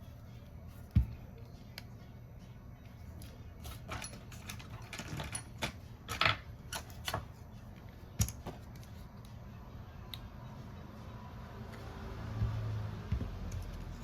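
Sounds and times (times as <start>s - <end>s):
hand tools clicking and scraping: 3.6s - 7.2s.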